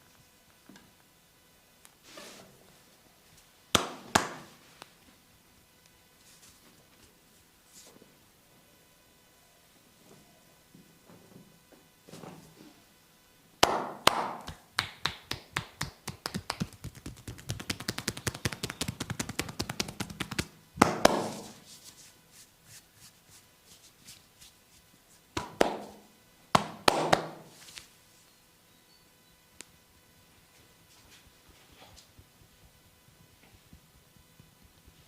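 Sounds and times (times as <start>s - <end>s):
hands slapping on body: 3.8s - 4.5s, 13.6s - 21.6s, 25.4s - 27.5s
hands tapping on body: 3.8s - 4.5s, 13.6s - 21.6s, 25.4s - 27.5s.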